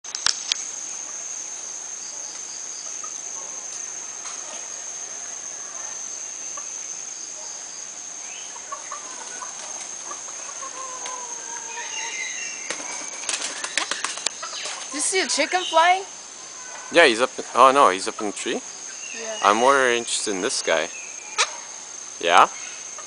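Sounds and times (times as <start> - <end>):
high-pitched insect drone: 0.1 - 23.0
faint bird calls: 8.2 - 17.3.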